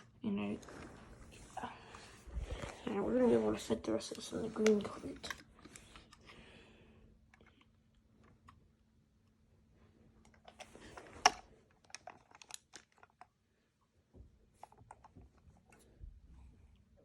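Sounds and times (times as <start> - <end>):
plastic toys clicking and knocking: 10.3 - 13.3
plastic toys rattling clatter: 10.3 - 13.3.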